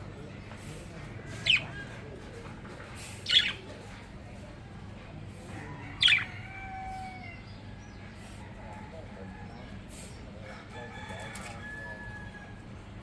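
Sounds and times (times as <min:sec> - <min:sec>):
budgies chirping: 0:01.3 - 0:01.8, 0:03.2 - 0:03.8, 0:06.0 - 0:06.4.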